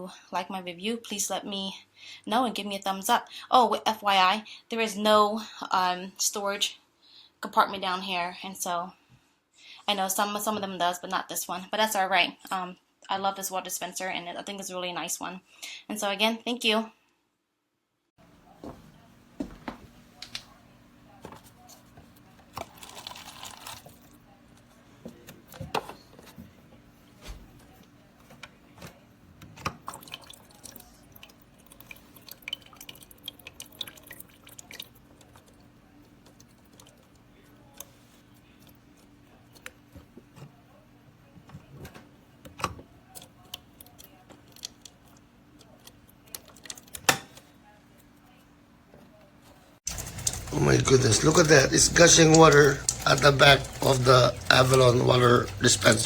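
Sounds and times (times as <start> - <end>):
water dripping and splashing: 29.8 - 35.6, 49.9 - 56.0
running water rush: 49.9 - 56.0.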